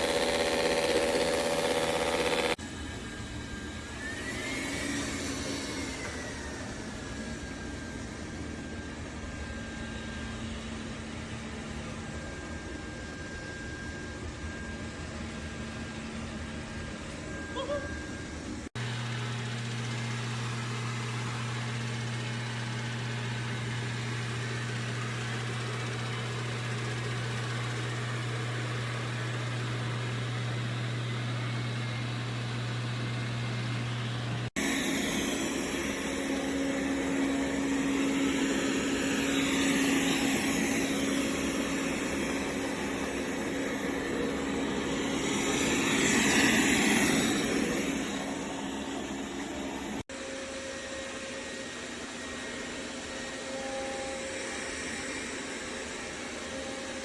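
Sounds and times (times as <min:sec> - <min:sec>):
robot vacuum motor hum: 0:00.0 - 0:02.6
high motor tone with hiss: 0:00.0 - 0:57.0.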